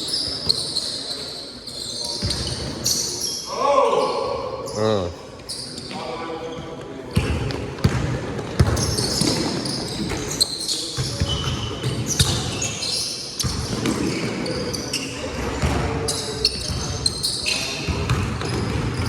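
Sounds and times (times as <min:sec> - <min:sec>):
sneakers squeaking on court: 0:00.0 - 0:03.5, 0:04.6 - 0:19.0
basketball bouncing on floor: 0:07.2 - 0:10.1, 0:17.9 - 0:19.0.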